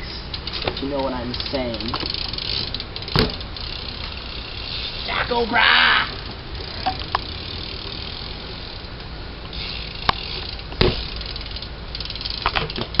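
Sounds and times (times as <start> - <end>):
rumble of bike tyres and wind: 0.0 - 13.0
sharp knocks: 3.1 - 3.4.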